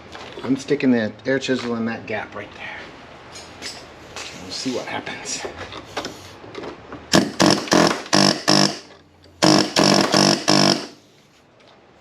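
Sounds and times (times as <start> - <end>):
air chisel buzzing rattle: 7.1 - 11.0.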